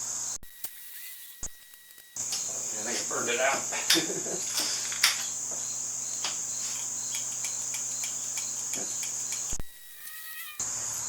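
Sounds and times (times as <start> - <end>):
crickets trilling: 0.0 - 11.0
low electrical hum: 0.0 - 11.0.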